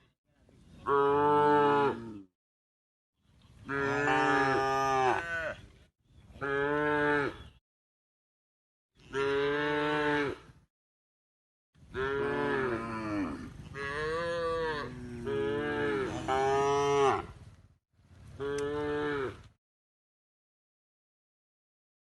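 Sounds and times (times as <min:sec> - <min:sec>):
cattle mooing: 0:03.7 - 0:05.6, 0:12.0 - 0:17.3.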